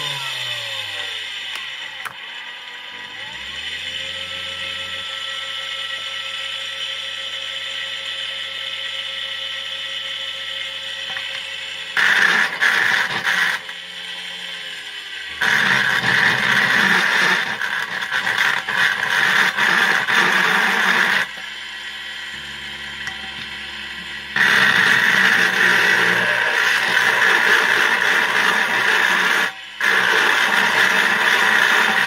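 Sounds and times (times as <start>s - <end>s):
small motor whining: 0.0s - 32.0s
loud rough grinding: 11.9s - 32.0s.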